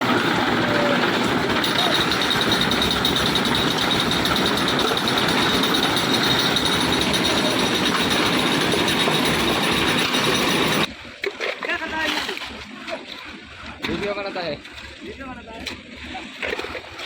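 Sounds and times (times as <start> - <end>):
concrete mixer running: 0.0 - 10.9.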